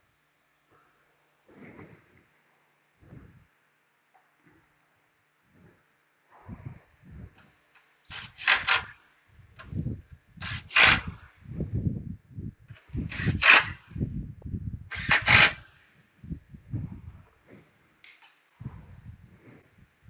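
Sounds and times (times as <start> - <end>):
tool and parts handling: 7.4 - 8.9.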